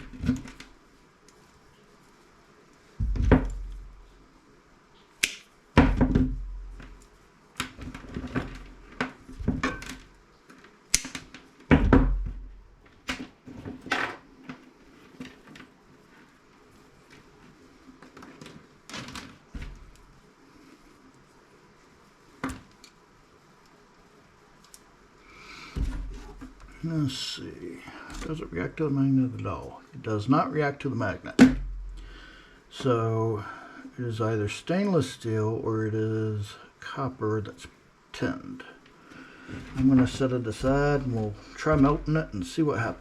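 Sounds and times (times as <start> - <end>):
metal parts clattering on a workbench: 9.4 - 10.1.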